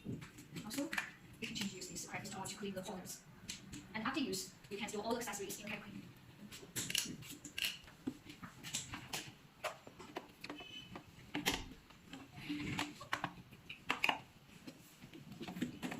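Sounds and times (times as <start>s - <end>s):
plastic accessories clicking and knocking: 6.5s - 15.9s.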